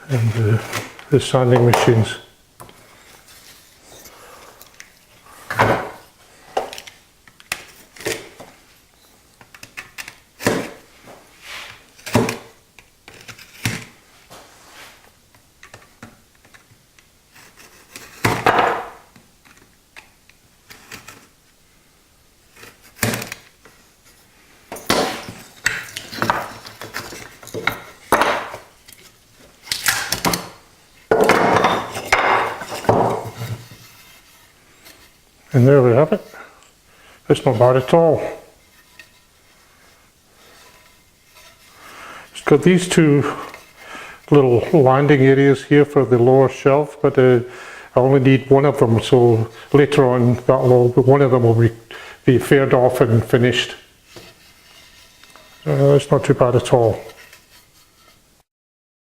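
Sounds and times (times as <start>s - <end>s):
wooden knocks and clatters: 18.2s - 19.0s, 24.7s - 28.7s, 31.1s - 34.2s
tape tearing and scraping: 25.0s - 30.6s.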